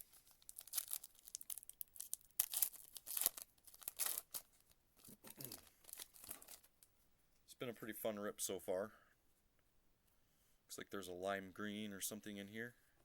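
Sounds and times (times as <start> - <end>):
foil wrapper tearing and crinkling: 0.0 - 4.5, 5.1 - 6.7.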